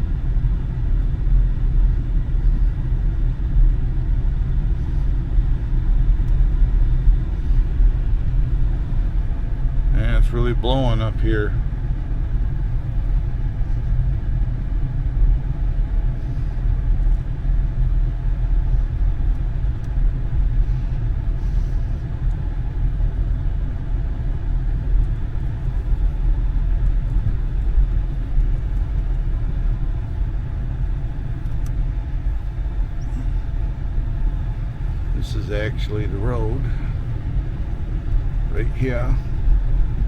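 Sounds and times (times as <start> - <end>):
vehicle engine rumble: 0.0 - 40.0
road noise: 23.8 - 40.0.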